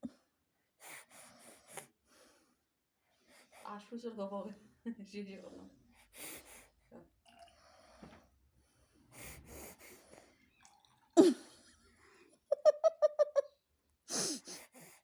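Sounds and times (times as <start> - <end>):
breathy snuffles: 5.9 - 6.8, 9.1 - 10.3, 14.1 - 15.0.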